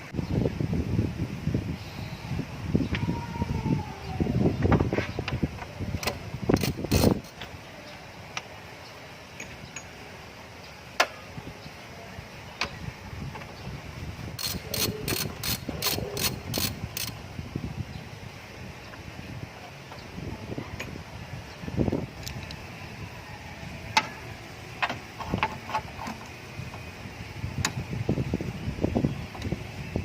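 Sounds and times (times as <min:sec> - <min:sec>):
hand tools clicking and knocking: 0:06.0 - 0:07.5, 0:14.4 - 0:17.2.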